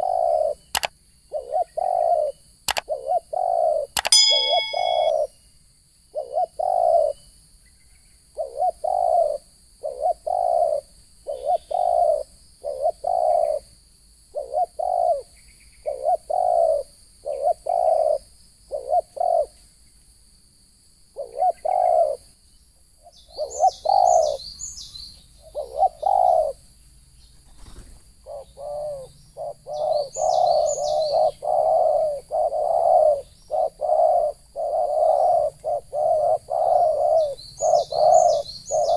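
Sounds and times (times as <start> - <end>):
doves cooing: 0.0 - 5.3, 6.2 - 7.2, 8.4 - 13.7, 14.4 - 19.6, 21.2 - 22.3, 23.4 - 24.4, 25.4 - 26.6, 27.5 - 38.9
small bird chirping: 0.0 - 13.7, 21.2 - 38.9
faint high whine: 4.1 - 5.3.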